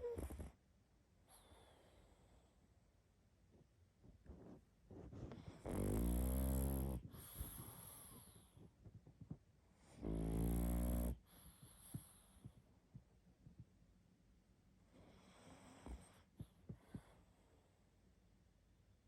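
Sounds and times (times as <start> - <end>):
dog snoring: 0.0 - 0.6, 5.0 - 8.6, 9.8 - 12.6, 15.0 - 17.2.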